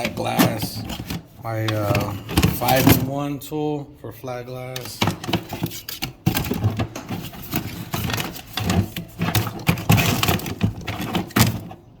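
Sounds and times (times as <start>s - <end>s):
tools clattering in toolbox: 4.8s - 11.8s.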